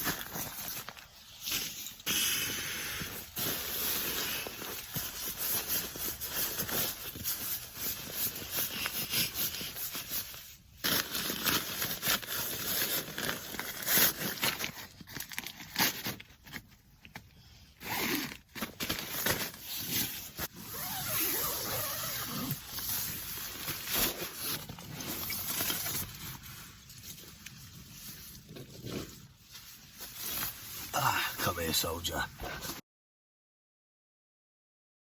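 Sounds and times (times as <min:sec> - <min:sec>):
outdoor gear rustling and zipping: 0:17.8 - 0:30.9.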